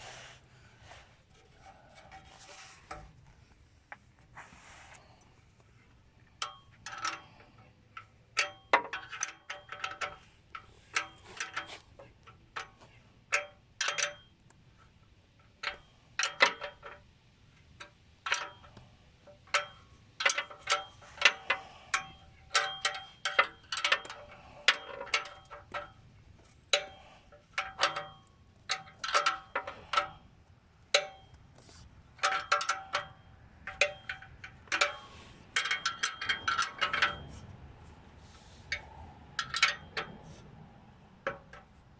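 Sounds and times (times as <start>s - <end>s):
hand tools clinking on metal: 18.3s - 30.3s, 30.9s - 37.4s, 38.7s - 40.4s.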